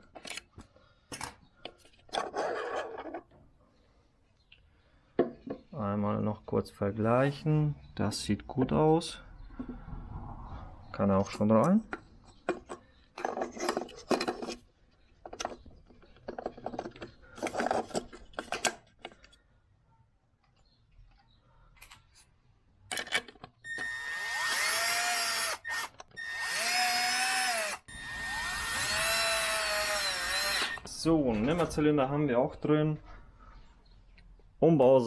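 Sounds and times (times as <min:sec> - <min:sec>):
cordless drill spinning: 0:23.6 - 0:30.9.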